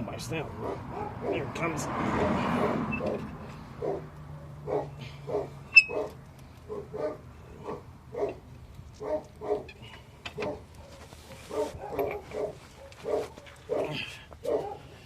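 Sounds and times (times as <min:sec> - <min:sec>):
dog barking: 0:00.6 - 0:01.5, 0:02.5 - 0:03.0, 0:03.8 - 0:08.4, 0:09.0 - 0:09.7, 0:10.4 - 0:14.9.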